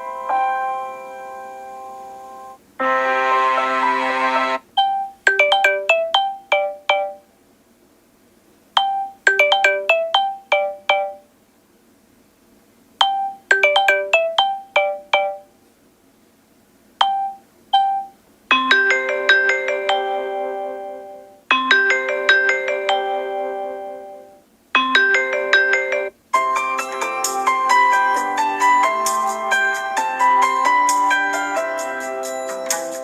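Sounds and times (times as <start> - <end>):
held chord: 0.0 - 4.6, 18.7 - 33.0
chiming ringtone melody: 4.8 - 7.3, 8.8 - 11.2, 13.0 - 15.5, 17.0 - 33.0.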